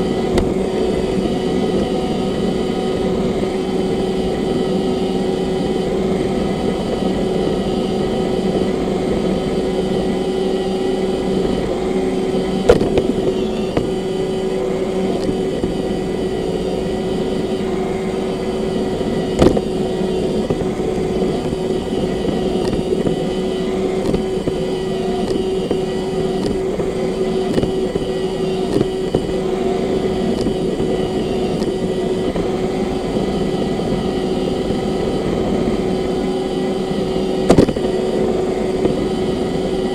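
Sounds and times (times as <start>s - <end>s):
robot vacuum running: 0.0s - 39.9s.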